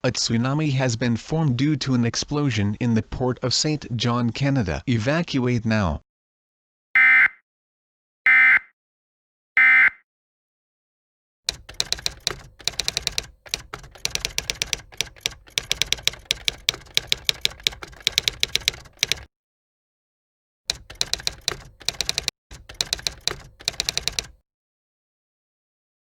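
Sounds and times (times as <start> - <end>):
keyboard keystroke clicks: 11.5 - 19.3, 20.7 - 24.4.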